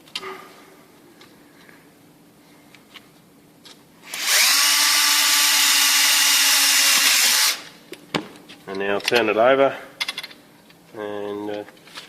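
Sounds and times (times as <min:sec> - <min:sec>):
power drill whining: 0:04.0 - 0:07.7.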